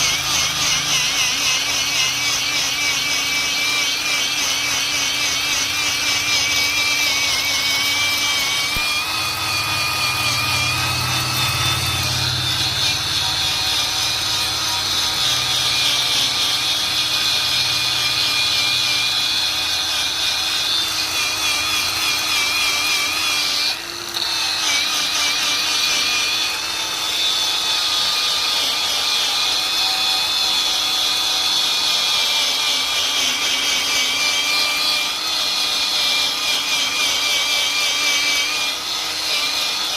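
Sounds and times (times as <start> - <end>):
power tool grinding metal: 0.0 - 39.9.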